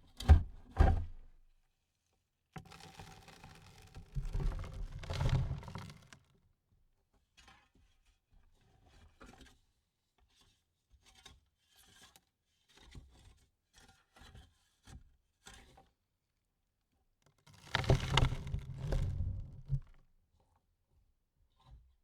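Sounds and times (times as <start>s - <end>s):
rubbing and scraping: 17.6s - 20.0s.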